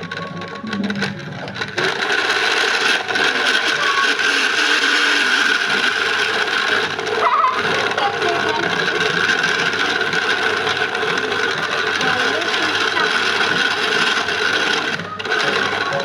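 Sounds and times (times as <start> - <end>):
electric motor whine: 0.0 - 16.0
rolling mechanism rattle: 0.0 - 16.0.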